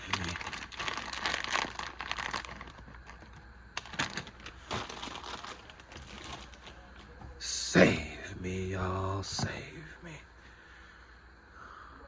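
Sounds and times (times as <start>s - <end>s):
crinkling rustle: 0.0s - 7.2s.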